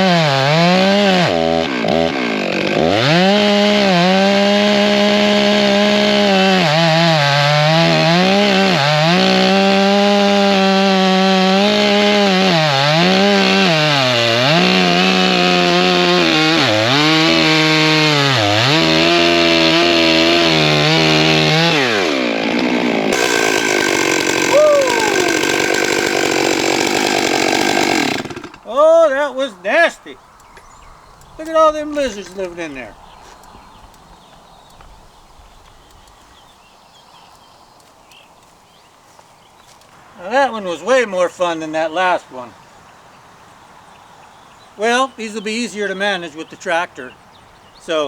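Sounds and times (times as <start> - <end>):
chainsaw cutting log: 0.0 - 28.8, 31.3 - 32.8.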